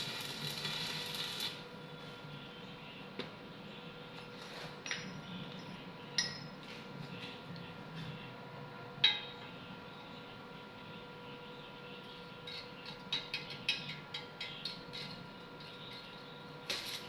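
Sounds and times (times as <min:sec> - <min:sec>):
faint steady hum: 0:00.0 - 0:17.0
metallic clinks and taps: 0:04.8 - 0:06.5.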